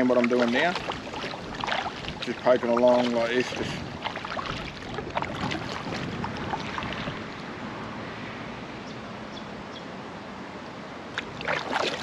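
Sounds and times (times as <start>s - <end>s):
oar splashes and drips: 0.0s - 7.5s, 11.1s - 12.0s
hiss of wind and water: 0.0s - 9.3s, 9.9s - 12.0s.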